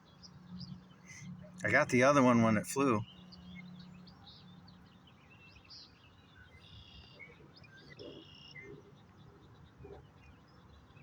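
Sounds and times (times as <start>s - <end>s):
faint bird chirps: 3.0s - 11.0s.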